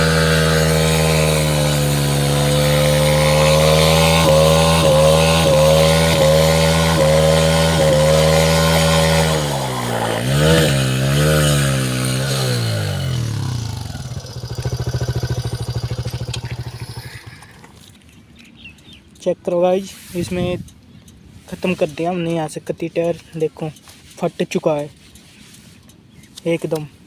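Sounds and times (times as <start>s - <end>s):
rear tyre spinning: 0.0s - 17.9s
motorcycle engine revving: 0.0s - 18.0s.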